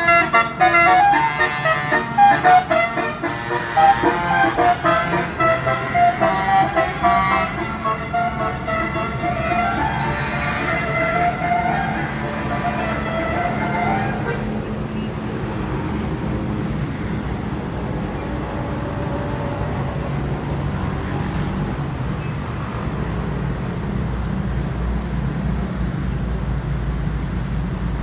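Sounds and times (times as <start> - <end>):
musical bus horn tune: 0.0 - 15.4, 18.0 - 21.1
bus engine humming: 0.0 - 28.0.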